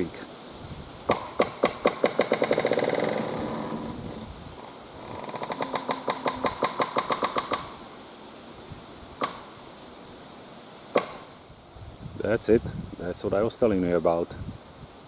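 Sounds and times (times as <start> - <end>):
sharp wooden knock: 1.1 - 3.3, 5.2 - 7.7, 9.2 - 9.4, 10.9 - 11.3
tree trunk creaking: 1.1 - 7.8.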